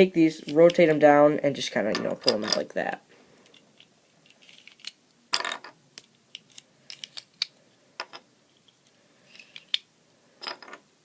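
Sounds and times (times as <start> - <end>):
plastic puzzle cube pieces clicking: 6.0 - 7.5.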